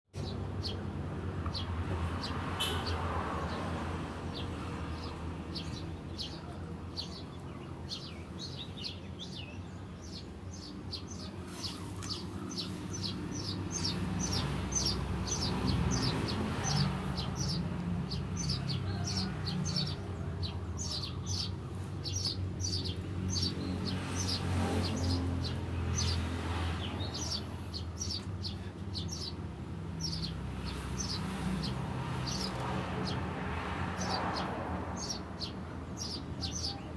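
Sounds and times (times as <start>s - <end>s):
sparrows chirping: 0.2s - 36.9s.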